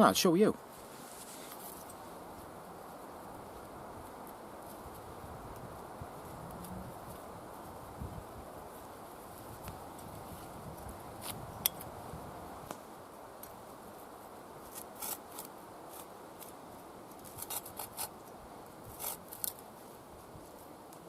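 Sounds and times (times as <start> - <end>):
sharp scraping strokes: 18.9 - 19.6.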